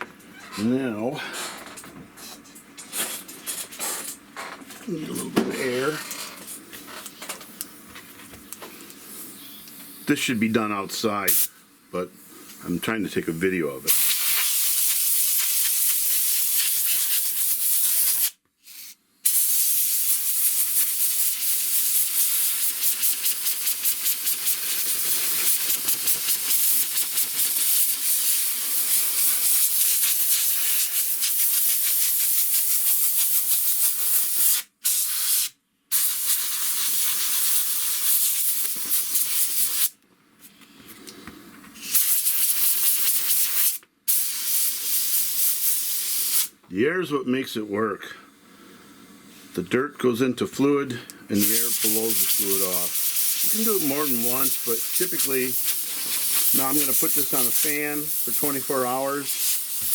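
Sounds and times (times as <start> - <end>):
compressed air hissing: 11.3 - 12.6, 13.9 - 40.0, 41.8 - 46.6, 51.3 - 59.9.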